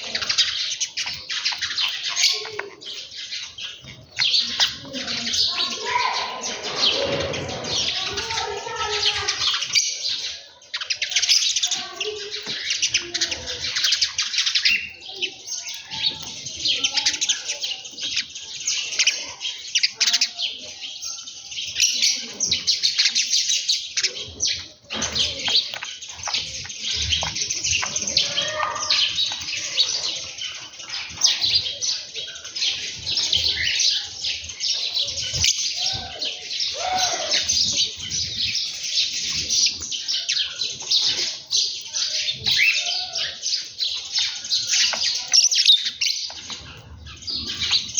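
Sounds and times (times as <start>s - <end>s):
flock of small birds chirping: 0.0s - 47.9s.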